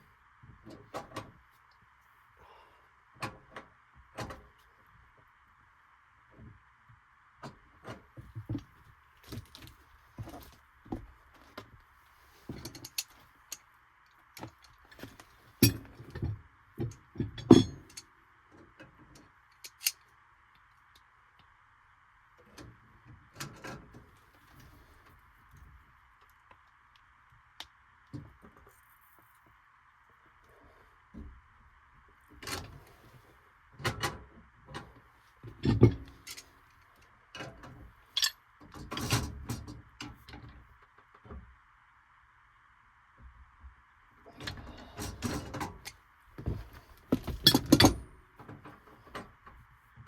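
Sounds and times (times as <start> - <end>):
tools and metal parts clinking: 14.4 - 16.1, 17.2 - 18.0, 19.6 - 20.0, 38.1 - 39.3, 44.4 - 48.0.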